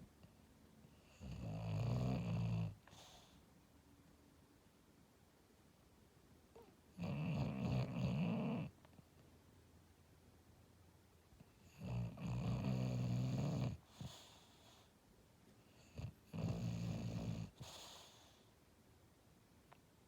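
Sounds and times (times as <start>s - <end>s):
dog snoring: 0.9s - 3.4s, 6.6s - 8.8s, 11.6s - 14.9s, 15.7s - 18.5s.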